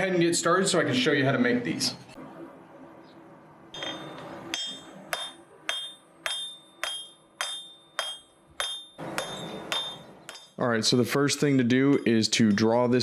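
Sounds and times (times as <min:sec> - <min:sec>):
hammer striking steel on anvil: 0:03.8 - 0:10.6.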